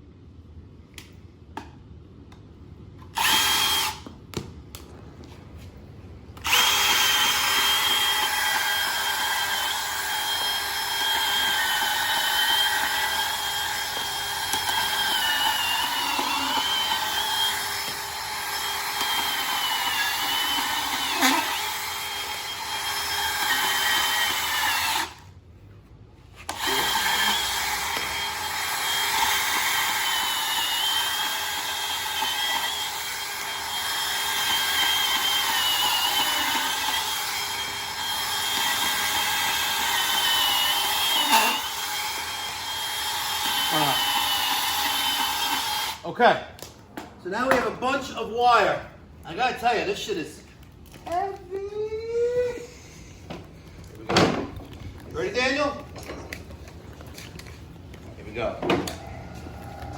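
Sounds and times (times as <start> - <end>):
bandsaw cutting cable: 3.0 - 4.1, 6.4 - 25.3, 26.4 - 46.0, 58.0 - 59.9.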